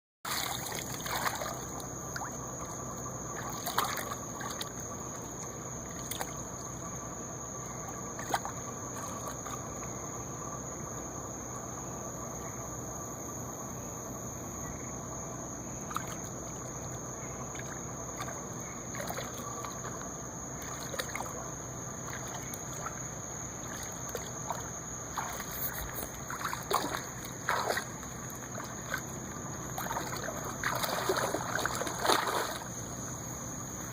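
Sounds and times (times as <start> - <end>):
water lapping and trickling: 0.2 - 10.4, 15.6 - 33.9
small splashes and knocks: 0.3 - 6.7, 7.8 - 9.9, 15.9 - 32.8.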